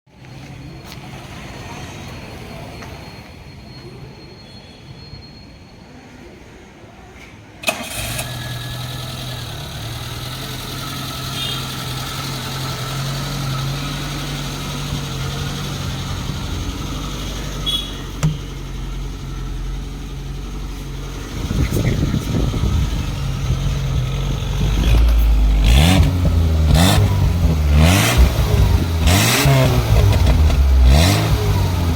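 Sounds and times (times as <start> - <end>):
car engine starting and idling: 7.6 - 31.9.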